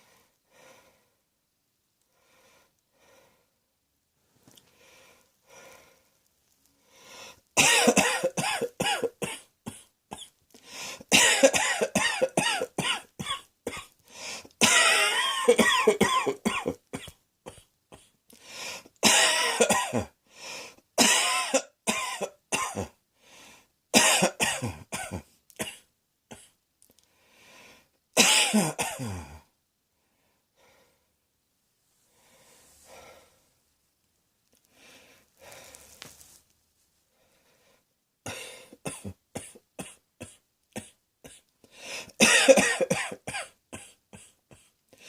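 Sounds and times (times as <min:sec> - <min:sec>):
faint breaths: 0:00.0 - 0:01.3, 0:02.0 - 0:03.7, 0:04.3 - 0:07.6, 0:10.5 - 0:11.1, 0:14.0 - 0:14.6, 0:18.0 - 0:19.0, 0:20.2 - 0:20.9, 0:23.2 - 0:23.8, 0:26.9 - 0:28.0, 0:29.4 - 0:31.2, 0:31.9 - 0:33.7, 0:34.6 - 0:36.4, 0:37.0 - 0:38.8, 0:41.6 - 0:42.2
person hacking coughs: 0:07.6 - 0:10.3, 0:11.1 - 0:13.9, 0:14.6 - 0:18.2, 0:19.0 - 0:20.1, 0:21.0 - 0:23.0, 0:24.0 - 0:26.6, 0:28.2 - 0:29.4, 0:38.3 - 0:41.5, 0:42.2 - 0:44.7.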